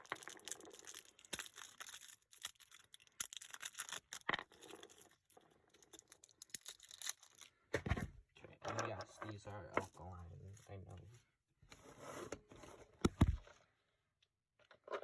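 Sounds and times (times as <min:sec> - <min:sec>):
plastic packaging tearing and crinkling: 0:00.0 - 0:07.5.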